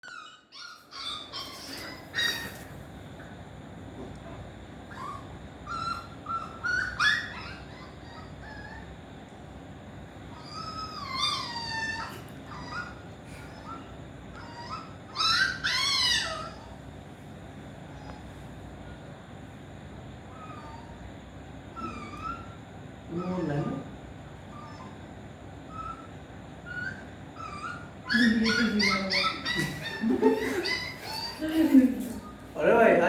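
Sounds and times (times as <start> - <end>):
puppy whining and yelping: 0.0 - 2.8, 4.9 - 9.0, 10.3 - 16.9, 17.8 - 18.4, 20.2 - 23.8, 24.4 - 32.6.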